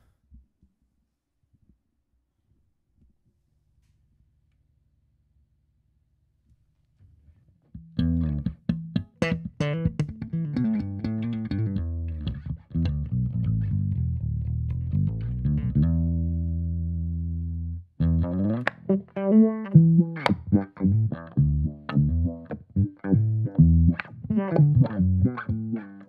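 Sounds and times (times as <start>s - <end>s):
distorted electric bass: 9.8s - 26.0s.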